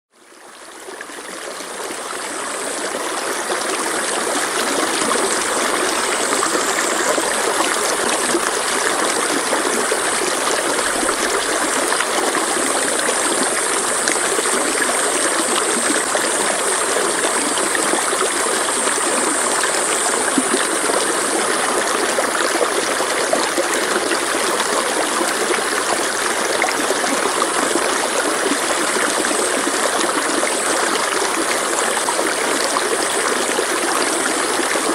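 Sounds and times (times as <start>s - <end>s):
stream splashing over rocks: 0.3s - 34.9s.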